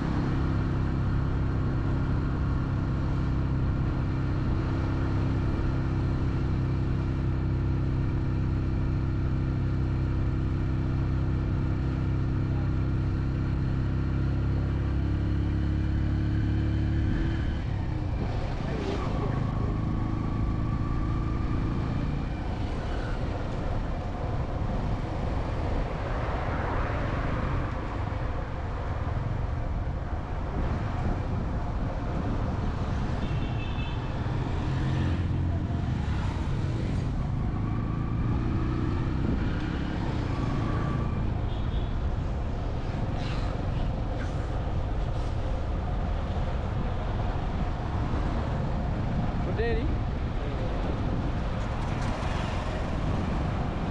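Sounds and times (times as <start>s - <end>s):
traffic rumble: 0.0s - 53.9s
vehicles passing: 0.0s - 53.9s.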